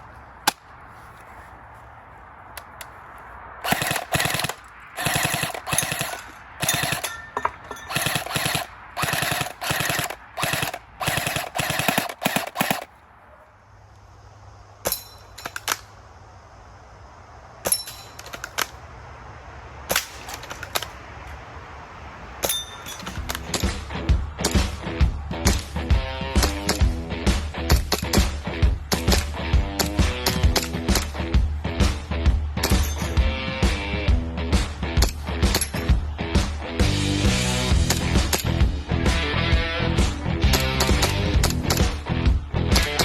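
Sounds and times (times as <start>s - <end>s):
airsoft gun firing bursts: 3.6s - 7.2s, 7.8s - 13.0s.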